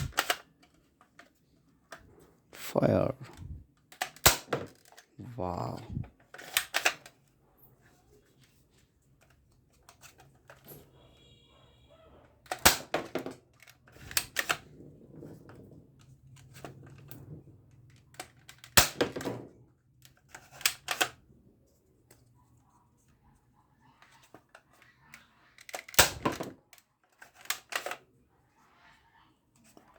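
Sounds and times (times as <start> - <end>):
plastic clicks and snaps: 0.0 - 1.3.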